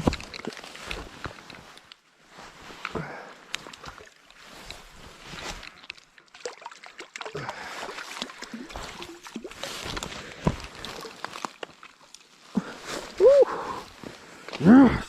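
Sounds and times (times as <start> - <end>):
water splashing: 3.6 - 13.3.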